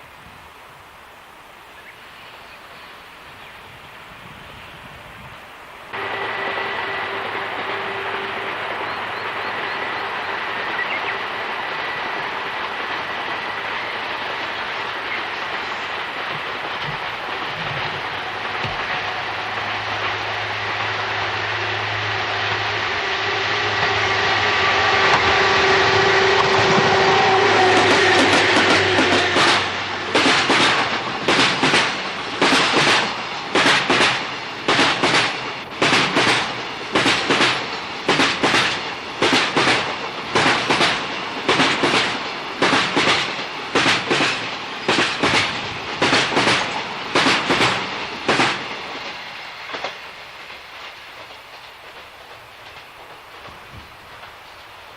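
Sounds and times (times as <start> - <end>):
electric train motor whine: 6.0 - 12.3, 16.8 - 30.1
wheels clacking over rail joints: 6.0 - 20.2, 26.4 - 54.9.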